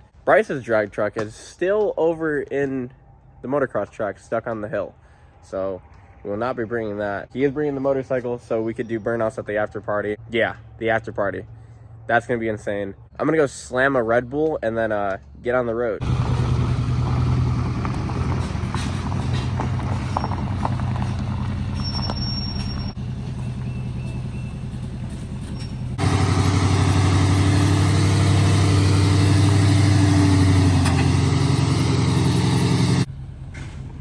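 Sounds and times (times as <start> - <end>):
truck engine droning: 16.0 - 34.0.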